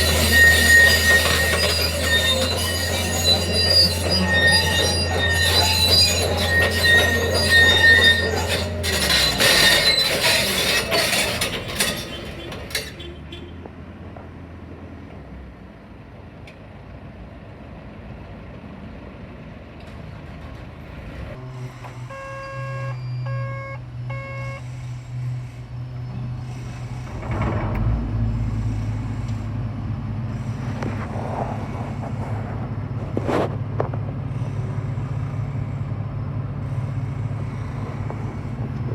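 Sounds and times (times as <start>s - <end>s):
diesel engine running: 0.0s - 13.1s, 20.2s - 38.9s
steel tracks squealing and clattering: 0.0s - 13.7s, 19.9s - 38.9s
short alarm beeps: 22.0s - 24.7s.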